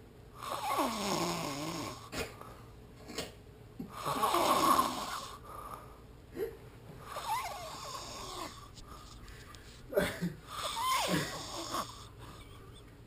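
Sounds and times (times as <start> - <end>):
person snoring: 0.4 - 2.1, 3.9 - 5.9, 7.0 - 9.2, 10.4 - 12.4.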